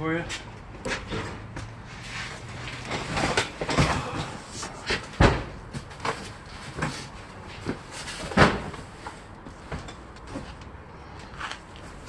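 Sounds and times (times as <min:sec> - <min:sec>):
boxes knocking and clunking: 0:02.7 - 0:10.6.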